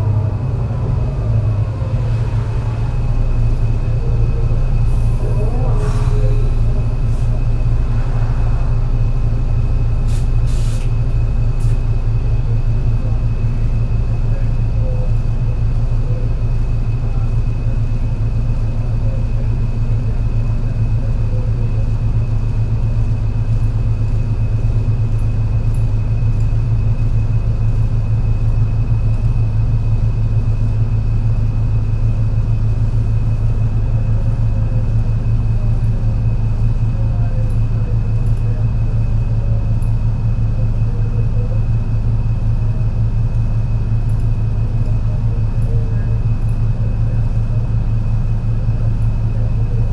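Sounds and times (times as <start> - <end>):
bus engine rumbling: 0.0 - 49.9.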